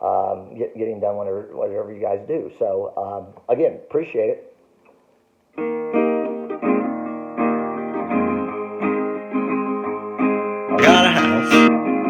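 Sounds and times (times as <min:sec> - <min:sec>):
guitar chords strummed: 0:10.7 - 0:12.0
brief voice-like sound: 0:10.8 - 0:11.7.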